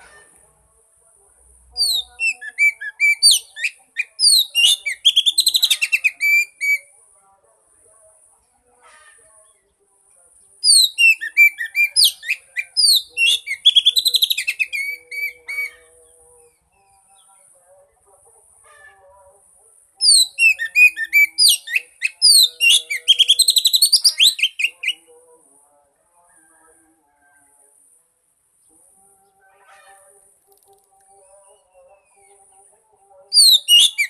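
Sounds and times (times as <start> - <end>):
bird song with whistles and trills: 1.8 - 6.9, 10.6 - 17.4, 20.0 - 25.1, 33.3 - 34.0.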